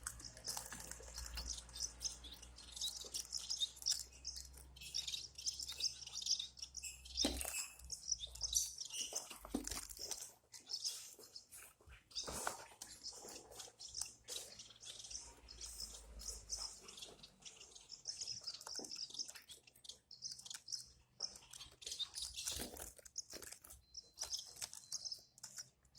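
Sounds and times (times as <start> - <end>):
scratching and rustling: 0.0 - 25.9
small birds chirping: 0.0 - 25.9.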